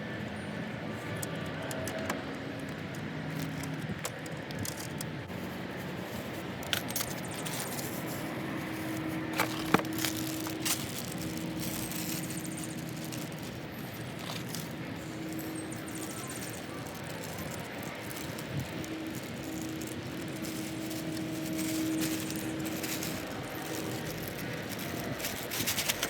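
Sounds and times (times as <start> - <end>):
metallic clicks and clinks: 6.6 - 8.2, 9.4 - 26.0.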